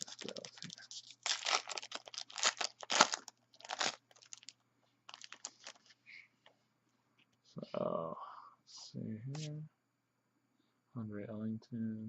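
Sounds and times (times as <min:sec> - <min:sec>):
plastic wrapper crinkling and tearing: 0:00.0 - 0:06.0.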